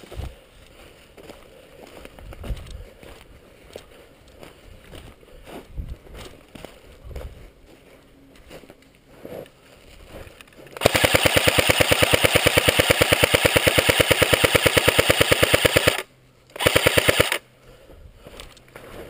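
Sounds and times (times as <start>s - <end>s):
airsoft gun firing bursts: 10.8s - 17.4s.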